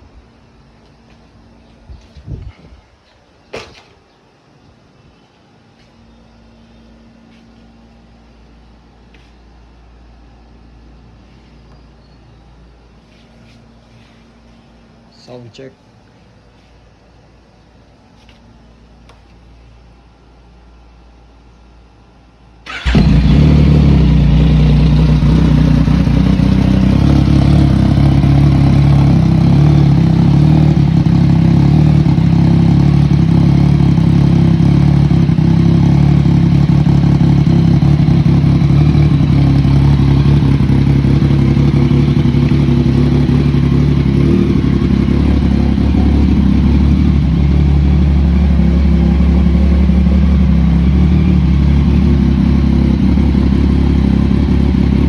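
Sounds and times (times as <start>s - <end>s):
motorcycle engine starting and running: 22.6s - 55.0s.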